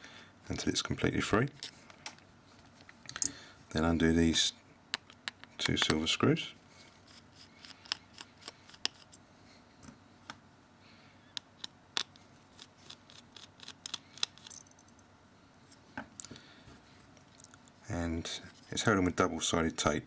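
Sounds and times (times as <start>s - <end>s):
screwdriver clicks and scrapes: 7.0s - 9.2s, 11.6s - 14.7s.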